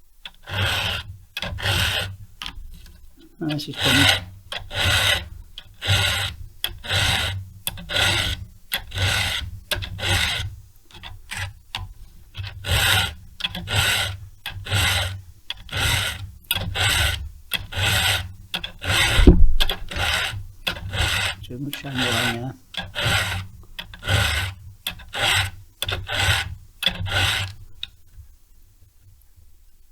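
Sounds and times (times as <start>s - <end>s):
file rasping on chainsaw chain: 0.3s - 27.6s.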